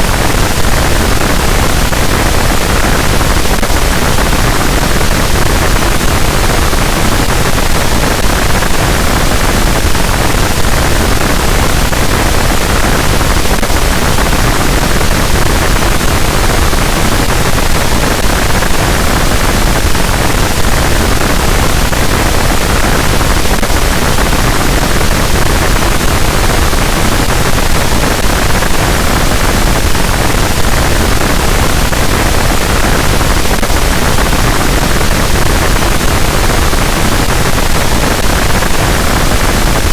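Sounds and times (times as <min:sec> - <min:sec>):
dense static noise: 0:00.0 - 0:39.9.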